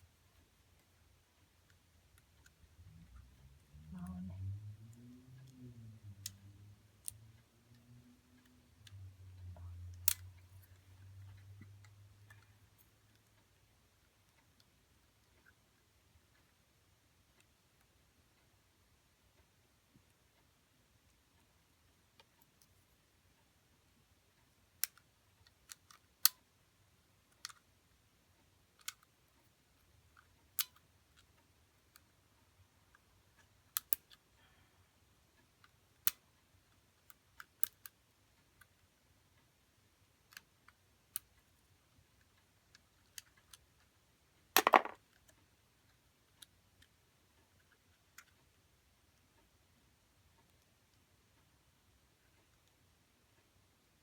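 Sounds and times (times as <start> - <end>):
handling clicks and taps: 44.6 - 45.0.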